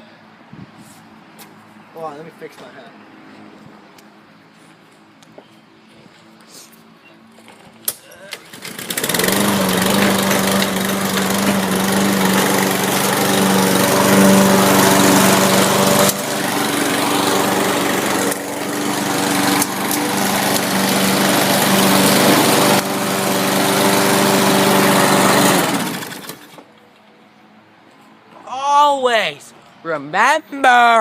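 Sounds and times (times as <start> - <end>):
lawnmower engine running: 8.4 - 26.7.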